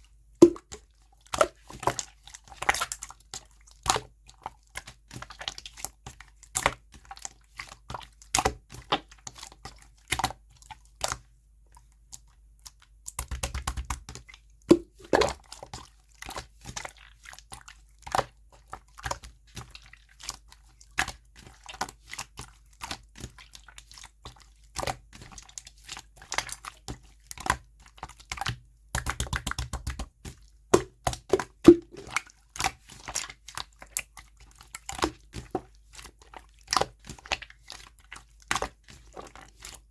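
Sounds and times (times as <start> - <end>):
slime clicking and popping: 14.7 - 15.4, 28.4 - 30.1, 30.8 - 32.2.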